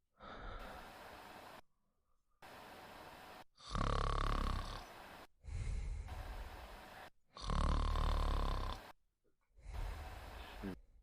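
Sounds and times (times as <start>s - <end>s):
quiet breath: 0.2s - 1.6s, 4.8s - 7.1s, 9.6s - 10.8s
woman snoring: 3.6s - 6.1s, 7.3s - 9.0s.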